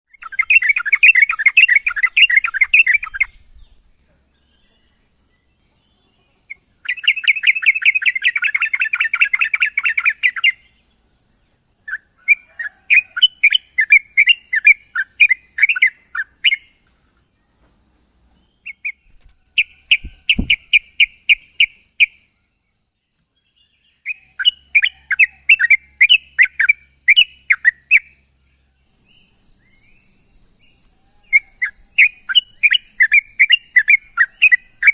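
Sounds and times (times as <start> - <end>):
steady high hiss: 0.2 - 19.4, 28.8 - 34.9
dull thump: 19.9 - 20.6.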